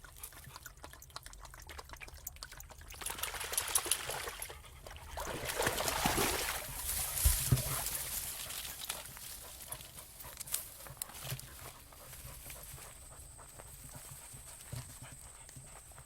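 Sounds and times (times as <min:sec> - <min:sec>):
dog lapping water: 0:00.0 - 0:16.0.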